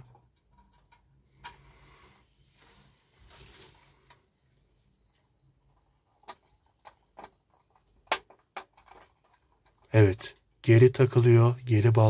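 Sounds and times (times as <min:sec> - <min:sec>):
plastic lamp parts rustling: 0:03.1 - 0:04.2, 0:05.6 - 0:09.9.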